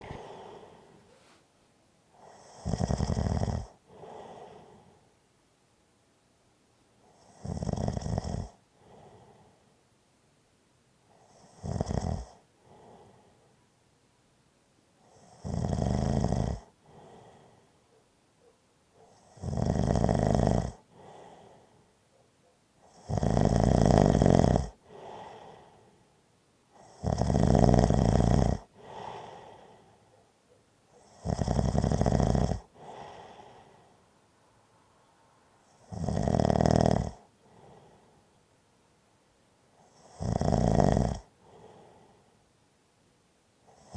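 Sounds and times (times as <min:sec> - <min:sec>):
person snoring: 0:00.0 - 0:01.4, 0:02.2 - 0:04.8, 0:07.2 - 0:08.6, 0:11.4 - 0:12.4, 0:15.2 - 0:17.2, 0:19.1 - 0:21.5, 0:22.9 - 0:25.8, 0:26.8 - 0:29.8, 0:31.1 - 0:33.8, 0:35.8 - 0:38.0, 0:39.9 - 0:42.0.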